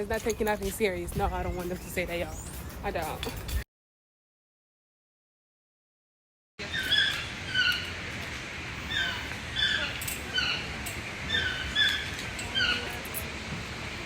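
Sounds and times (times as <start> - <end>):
animal squeaky calls: 6.6 - 7.9, 8.8 - 13.0.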